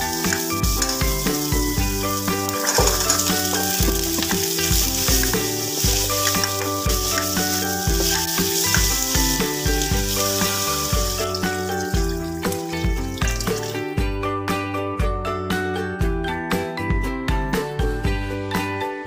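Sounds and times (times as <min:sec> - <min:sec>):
paste sizzling in hot oil: 0:00.0 - 0:13.8.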